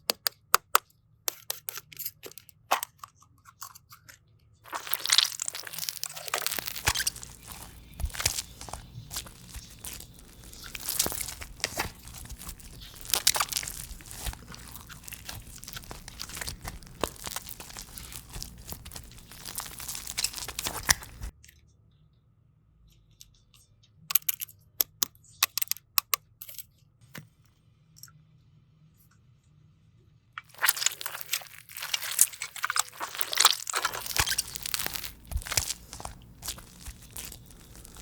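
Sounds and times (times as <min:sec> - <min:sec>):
sharp clicks and pops: 0:04.7 - 0:21.3, 0:30.4 - 0:38.0
slime crackling and crunching: 0:04.7 - 0:21.3, 0:30.4 - 0:38.0.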